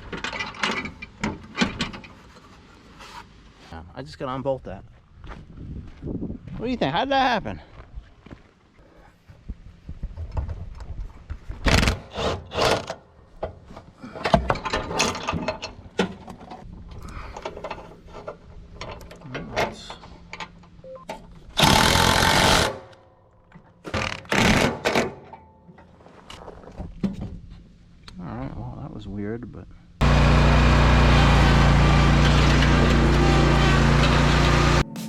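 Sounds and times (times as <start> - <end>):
impact wrench bursts: 21.6 - 22.9.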